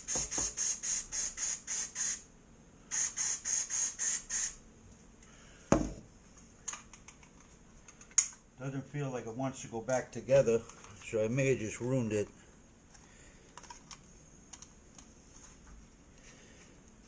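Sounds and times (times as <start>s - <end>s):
aerosol can spritzes: 0.0s - 2.2s, 2.9s - 4.6s.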